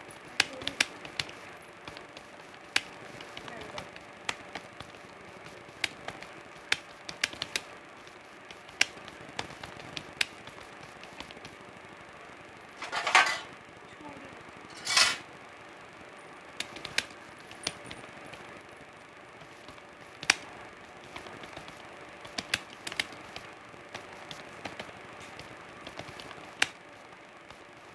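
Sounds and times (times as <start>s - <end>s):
keyboard keys clicking: 0.2s - 7.7s, 8.5s - 11.6s, 16.6s - 18.4s, 19.4s - 26.8s.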